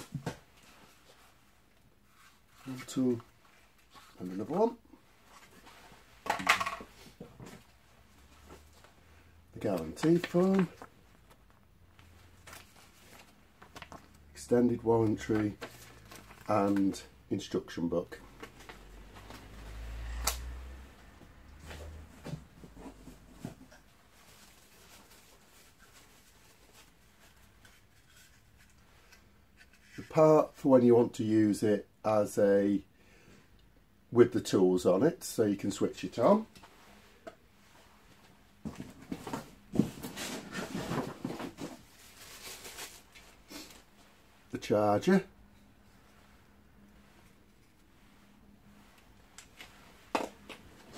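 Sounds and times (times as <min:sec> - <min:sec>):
packaging rustling: 0:15.0 - 0:17.0, 0:38.9 - 0:43.9.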